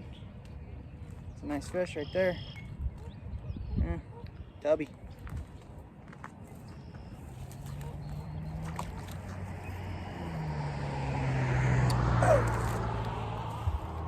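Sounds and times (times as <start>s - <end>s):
vehicle engine passing by: 7.7s - 14.0s.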